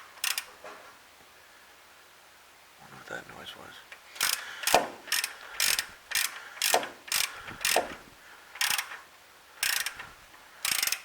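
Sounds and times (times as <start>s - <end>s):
ratchet clicking: 0.2s - 0.5s, 4.2s - 8.0s, 8.6s - 9.0s, 9.6s - 11.0s.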